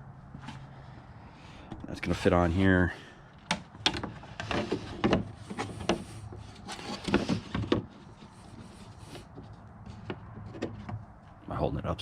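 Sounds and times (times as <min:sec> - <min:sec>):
light knocks and rubbing of plastic part: 0:03.4 - 0:11.4.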